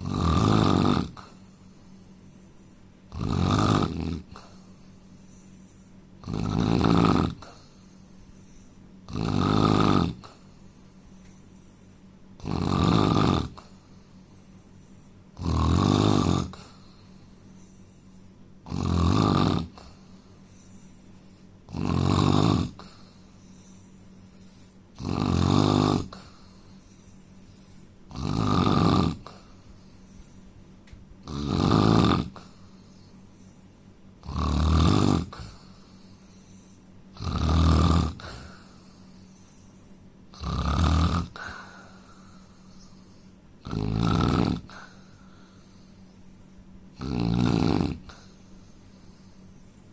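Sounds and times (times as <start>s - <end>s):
man snoring: 0.0s - 4.7s, 6.2s - 10.6s, 12.4s - 14.0s, 15.4s - 17.8s, 18.6s - 20.9s, 21.7s - 29.6s, 31.2s - 33.1s, 34.2s - 45.9s, 46.9s - 49.3s.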